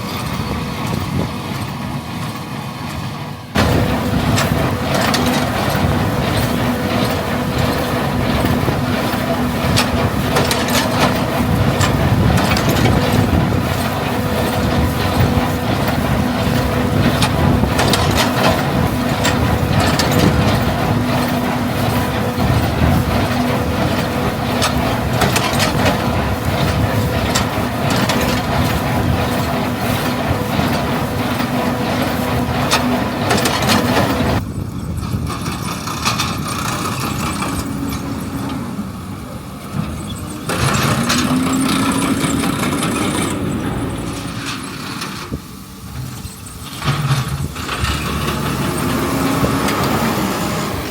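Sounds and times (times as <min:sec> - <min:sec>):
tractor engine running: 0:00.0 - 0:50.9
mechanical clicks and knocks: 0:03.6 - 0:34.4.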